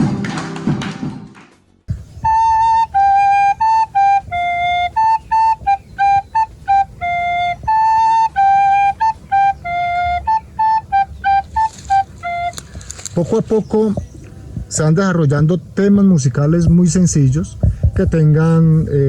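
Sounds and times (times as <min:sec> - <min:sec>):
flute playing simple tune: 0:01.9 - 0:13.5.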